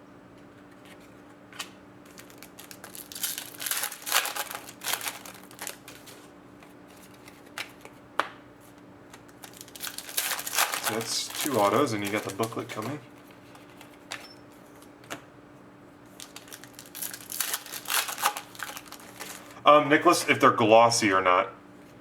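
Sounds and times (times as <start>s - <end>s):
wrapper crinkling and rustling: 2.0s - 6.3s, 9.1s - 14.1s, 16.1s - 19.6s.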